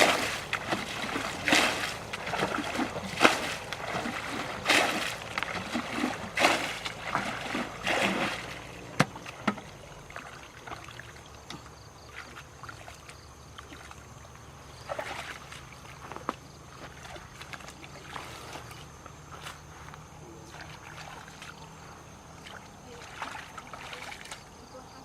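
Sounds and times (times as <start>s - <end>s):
faint water trickling: 0.0s - 25.0s
water splashing and sloshing: 0.0s - 25.0s.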